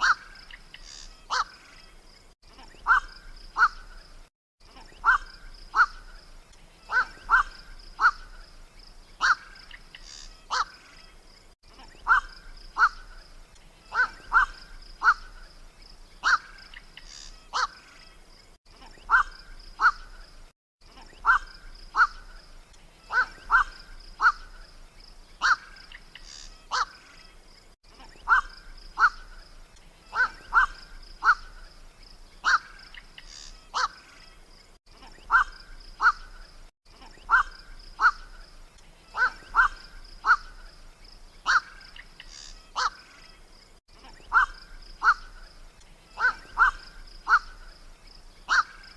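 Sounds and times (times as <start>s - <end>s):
heron calls: 0.0s - 1.6s, 2.7s - 3.9s, 4.8s - 6.2s, 6.8s - 8.4s, 9.2s - 10.8s, 11.9s - 13.3s, 13.9s - 15.5s, 16.2s - 17.8s, 19.0s - 20.2s, 21.1s - 22.4s, 23.1s - 24.6s, 25.4s - 27.0s, 28.0s - 31.7s, 32.4s - 34.1s, 35.1s - 36.4s, 37.0s - 38.4s, 39.1s - 40.8s, 41.4s - 43.2s, 44.0s - 47.7s, 48.4s - 48.9s.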